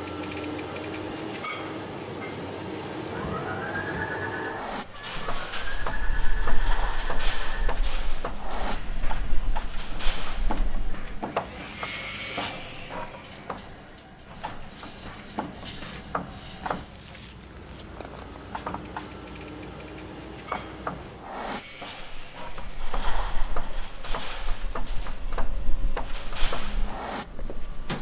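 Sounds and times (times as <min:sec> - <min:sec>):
heavy machine rumble: 0:04.6 - 0:17.0, 0:20.8 - 0:28.0
knocks and clanks: 0:04.8 - 0:17.0, 0:20.5 - 0:28.0.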